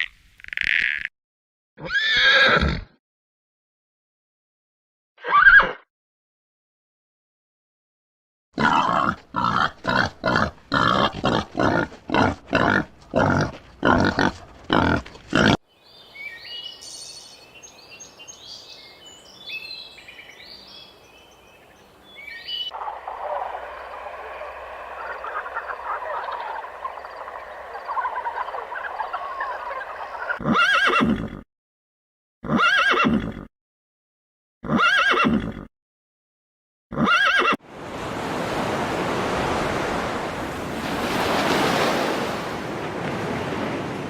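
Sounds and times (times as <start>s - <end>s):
animal grunts: 8.6s - 15.6s
high bird chirping: 15.8s - 30.4s
chatter of small calls: 22.7s - 30.4s.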